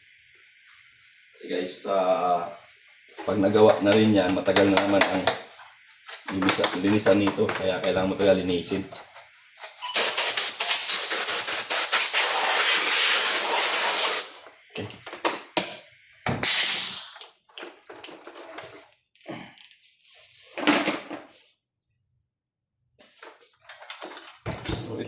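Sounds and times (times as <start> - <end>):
aerosol can spraying: 9.9 - 14.4, 16.4 - 17.2.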